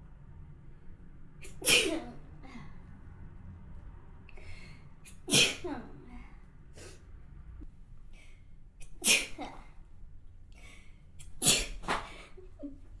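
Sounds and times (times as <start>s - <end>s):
woman sneezing: 1.4s - 2.2s, 5.1s - 5.9s, 8.8s - 9.7s, 11.4s - 12.2s.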